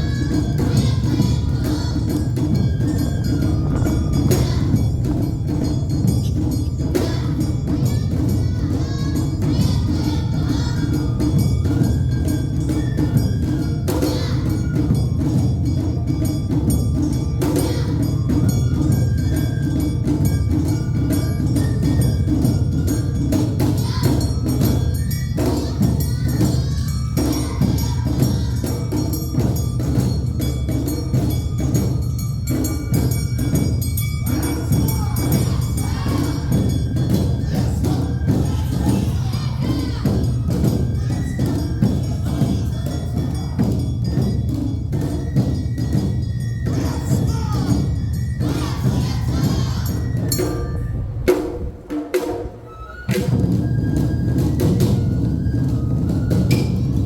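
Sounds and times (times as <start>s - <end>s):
pitched melody line: 0.0s - 14.4s
clanging metal bells: 0.0s - 51.7s, 52.6s - 57.0s
drums: 0.0s - 57.0s.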